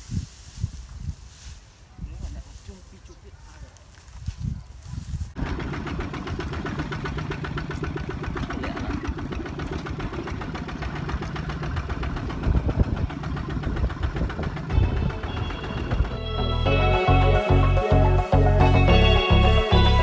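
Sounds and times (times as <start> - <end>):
small engine chugging: 5.4 - 16.5.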